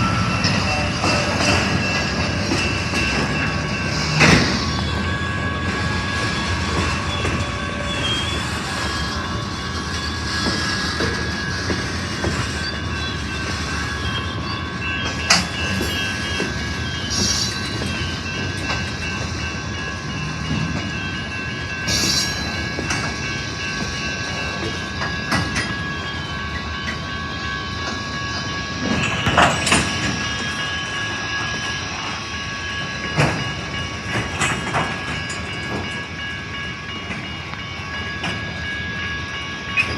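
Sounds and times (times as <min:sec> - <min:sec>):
high wheel squeal: 0:00.0 - 0:36.3
train wheels clicking over rail joints: 0:14.8 - 0:27.1, 0:27.8 - 0:39.9.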